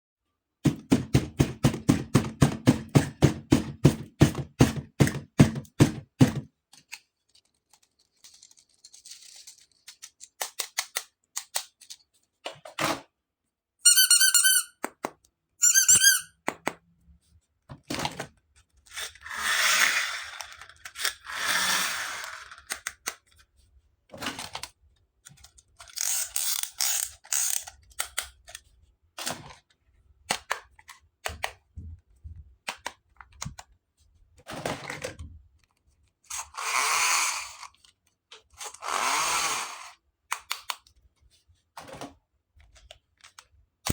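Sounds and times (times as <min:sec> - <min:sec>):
plastic toy parts clicking: 0:06.7 - 0:12.1, 0:19.8 - 0:23.4, 0:25.3 - 0:28.8, 0:40.3 - 0:40.9
short warbling squeaks: 0:13.9 - 0:14.7, 0:15.6 - 0:16.3.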